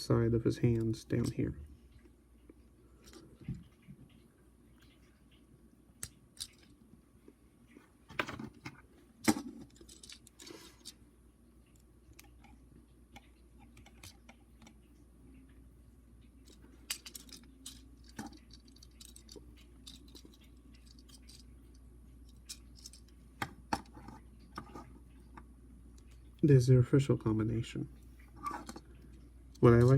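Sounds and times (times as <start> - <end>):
plastic toy parts clicking: 6.0 - 6.7, 9.2 - 10.9, 16.4 - 21.5, 22.3 - 23.9.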